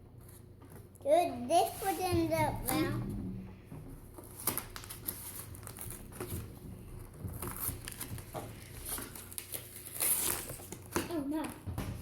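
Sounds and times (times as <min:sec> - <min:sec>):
plastic packaging crinkling: 0:04.2 - 0:11.0.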